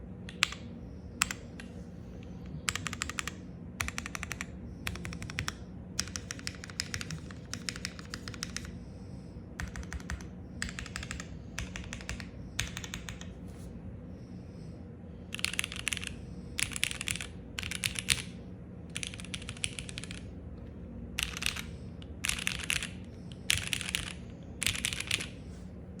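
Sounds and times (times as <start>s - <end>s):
mechanical keyboard typing: 0.3s - 0.6s, 2.6s - 8.8s, 9.6s - 13.3s, 15.3s - 18.3s, 18.9s - 20.3s, 21.2s - 25.4s.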